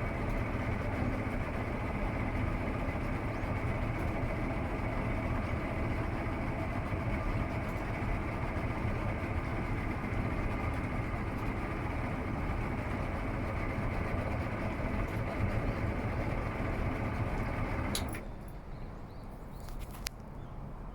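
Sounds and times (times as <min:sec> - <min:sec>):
outboard motor idling: 0:00.0 - 0:18.2
motor stopping click: 0:12.7 - 0:18.2.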